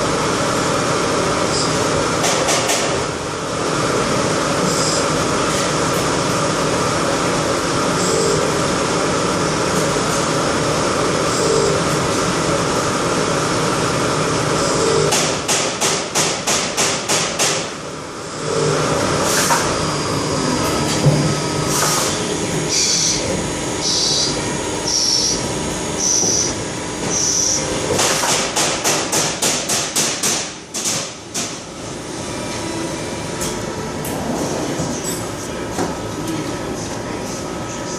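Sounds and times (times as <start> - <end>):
lathe machine noise: 0.0 - 29.8.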